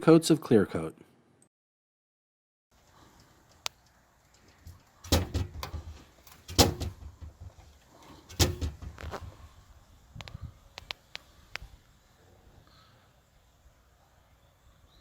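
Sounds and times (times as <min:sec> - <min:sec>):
light clicks and rattles: 0:02.9 - 0:09.5
heavy knocks: 0:04.5 - 0:09.4.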